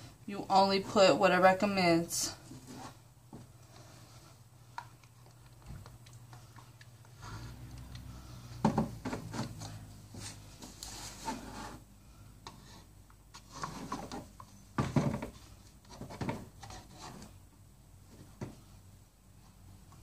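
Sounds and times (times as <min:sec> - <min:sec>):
plastic bottle rubbing and knocking: 0:13.4 - 0:17.4.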